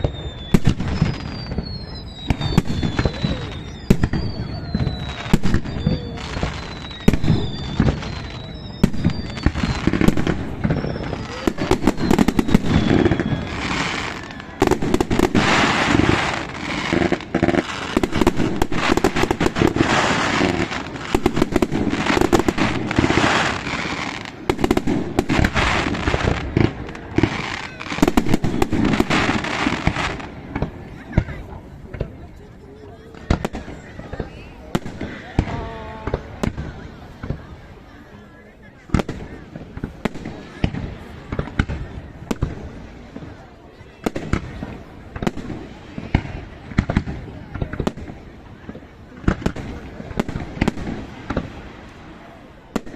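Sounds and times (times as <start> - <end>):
firework whistles: 0.0 - 31.6
firecrackers banging and crackling: 0.0 - 52.9.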